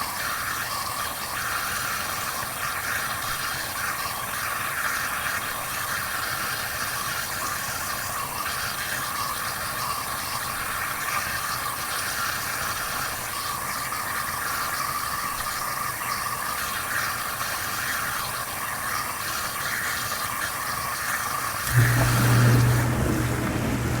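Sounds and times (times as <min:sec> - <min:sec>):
motor humming: 0:21.6 - 0:24.0.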